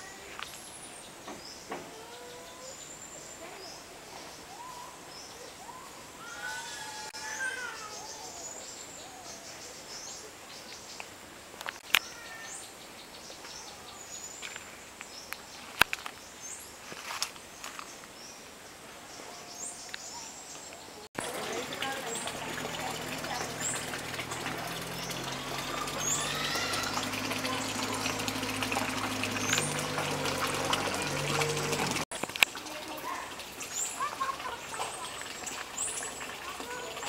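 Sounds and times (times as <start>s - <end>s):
birds chirping and whistling: 0.4s - 10.2s, 23.3s - 32.0s
long pitched bird call: 5.6s - 9.4s, 25.0s - 31.7s.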